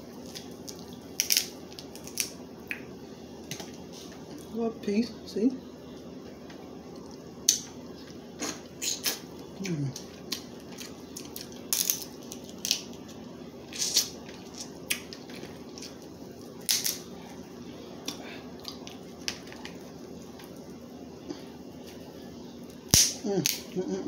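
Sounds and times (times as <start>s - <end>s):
crab shells cracking: 0.2s - 2.8s, 10.0s - 17.1s, 22.9s - 23.7s.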